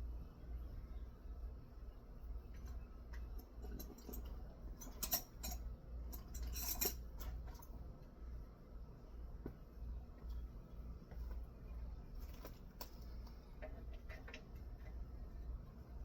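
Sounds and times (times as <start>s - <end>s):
low steady hum: 0.0s - 16.0s
metal tools clinking: 2.5s - 7.7s.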